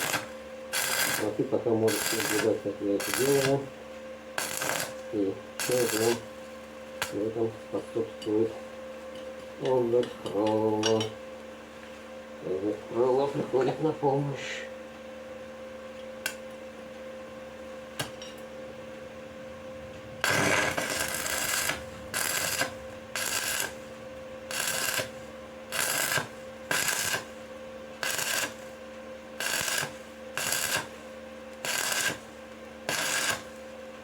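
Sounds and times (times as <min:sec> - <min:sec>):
welding arc sputtering crackle: 0:00.0 - 0:03.7, 0:04.4 - 0:06.3, 0:07.0 - 0:07.4, 0:19.9 - 0:33.6.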